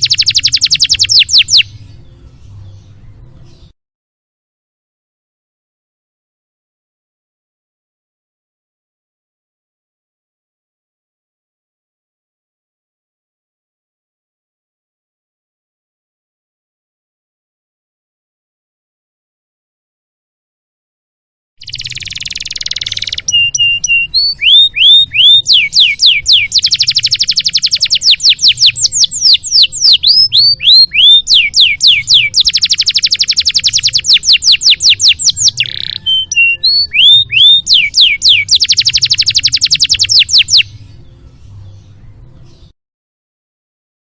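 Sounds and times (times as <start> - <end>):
canary singing: 0.0 - 3.8, 21.6 - 42.7.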